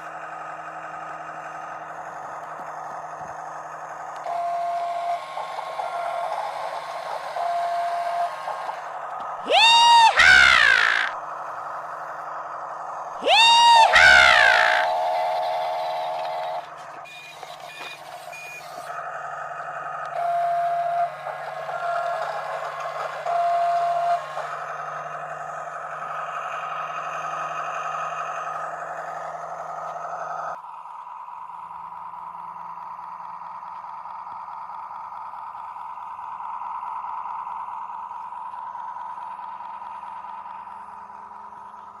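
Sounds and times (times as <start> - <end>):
small electric motors whining: 4.2 - 11.2, 13.2 - 30.5.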